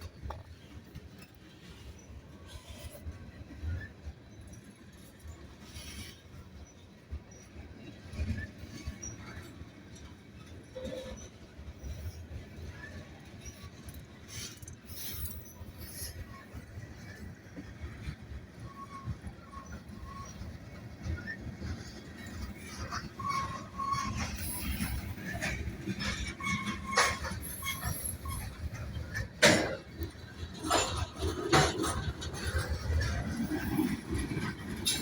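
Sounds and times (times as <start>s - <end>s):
railcars rumbling: 0.0s - 35.0s
clanks and knocks: 29.1s - 35.0s.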